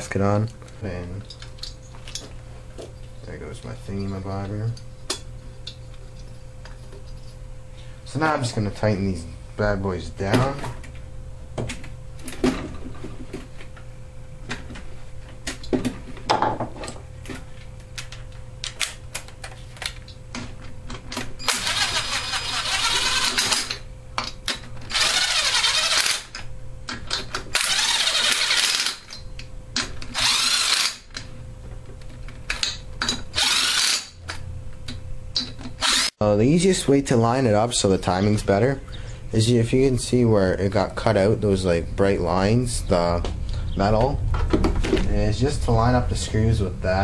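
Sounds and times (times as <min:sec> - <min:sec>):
rapid rasping tool noise: 0:21.5 - 0:23.7, 0:24.9 - 0:26.3, 0:27.6 - 0:29.0, 0:30.2 - 0:31.1, 0:33.4 - 0:34.2.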